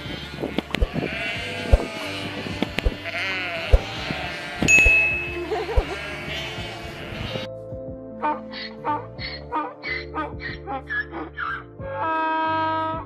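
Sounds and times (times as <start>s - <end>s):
livestock bleating: 0.0s - 7.5s, 8.8s - 13.0s
short high tone: 4.7s - 5.5s.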